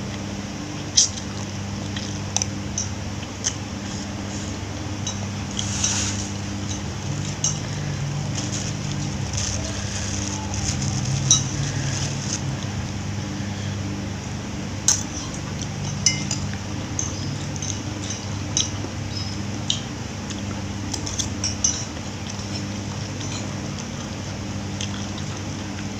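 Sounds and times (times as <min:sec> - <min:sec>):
steady low hum: 0:00.0 - 0:25.9
cutlery clinking on dishes: 0:14.9 - 0:18.8.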